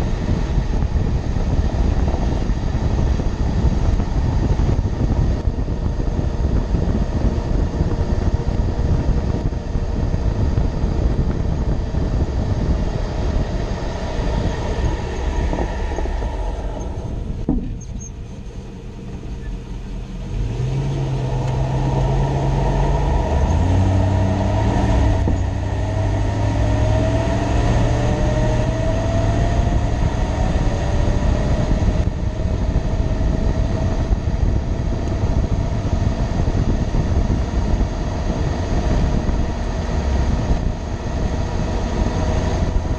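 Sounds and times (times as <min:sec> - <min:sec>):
pickup truck engine and road noise: 0:00.0 - 0:42.9.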